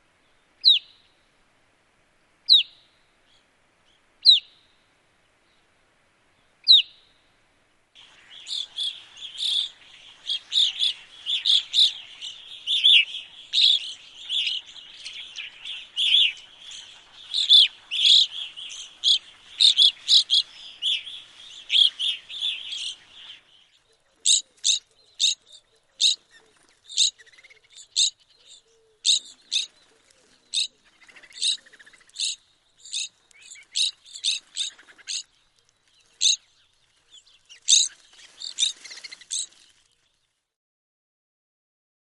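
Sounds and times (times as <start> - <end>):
flock of birds chirping: 8.0 - 40.4.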